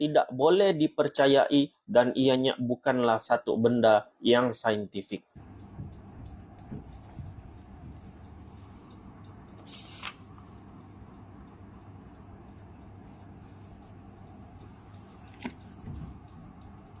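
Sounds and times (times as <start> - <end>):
steady low hum: 5.3 - 17.0.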